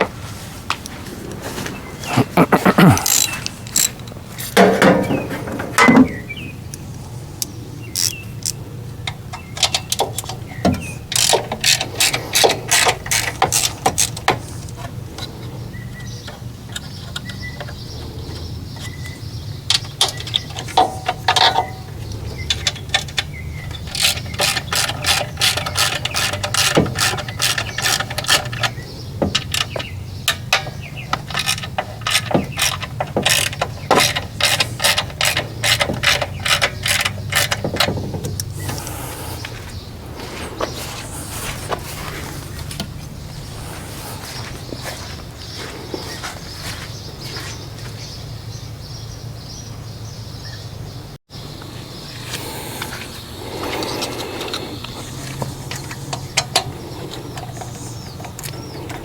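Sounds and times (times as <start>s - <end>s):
ratchet wrench clicking: 8.0s - 8.6s, 24.0s - 28.4s
steady low hum: 51.3s - 59.0s.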